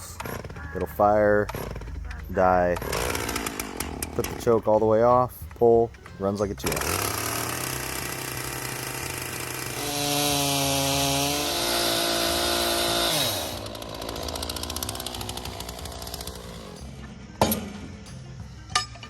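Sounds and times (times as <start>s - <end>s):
chainsaw idling and revving: 0.2s - 4.6s, 6.6s - 17.0s.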